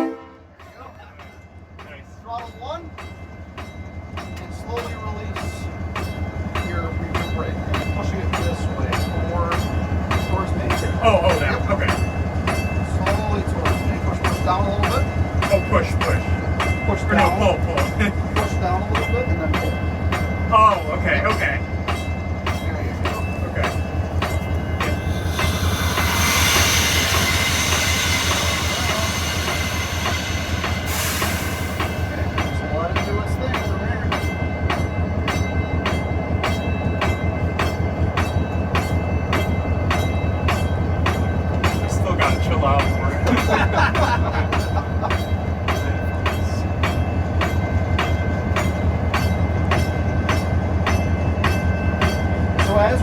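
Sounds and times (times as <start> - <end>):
diesel locomotive engine running: 0.0 - 53.0
broad hiss: 25.0 - 32.1.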